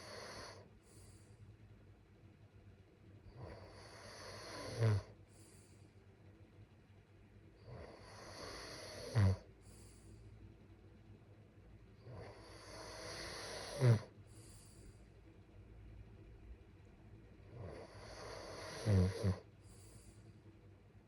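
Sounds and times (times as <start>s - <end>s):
person snoring: 3.4s - 5.1s, 7.7s - 9.4s, 12.0s - 14.5s, 17.5s - 19.5s.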